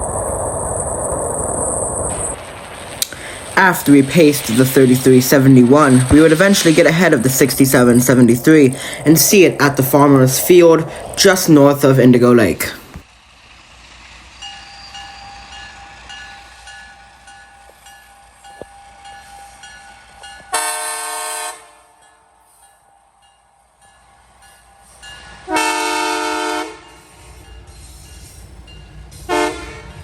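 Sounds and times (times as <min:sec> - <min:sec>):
locomotive air horn blasts: 0:20.5 - 0:22.0, 0:25.4 - 0:27.0, 0:29.3 - 0:30.0.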